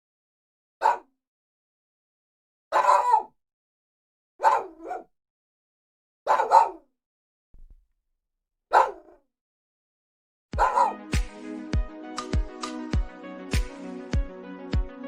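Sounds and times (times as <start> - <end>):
small dog barking: 0.8 - 1.1, 2.7 - 3.3, 4.4 - 5.1, 6.3 - 6.9, 8.7 - 9.2, 10.6 - 11.0.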